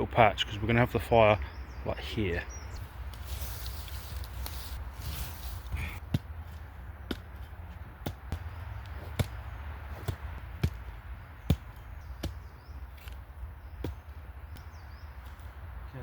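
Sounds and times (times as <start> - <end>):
sharp knocks on ground: 7.0 - 13.2, 13.8 - 15.5.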